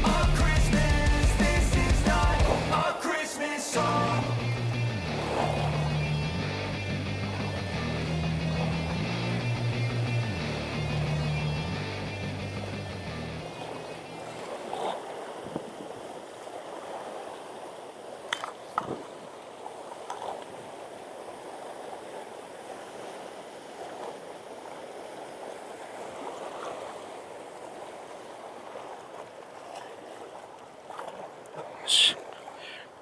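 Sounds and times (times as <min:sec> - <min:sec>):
water washing: 0:00.0 - 0:16.0.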